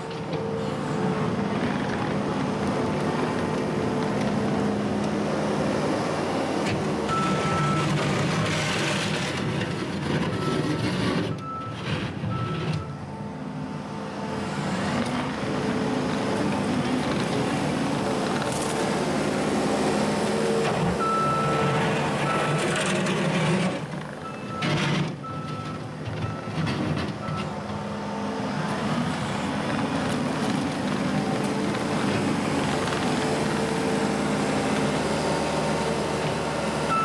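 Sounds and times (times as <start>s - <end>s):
track loader engine working: 0.0s - 37.0s
backup alarm beeps: 7.1s - 8.0s, 21.0s - 22.6s.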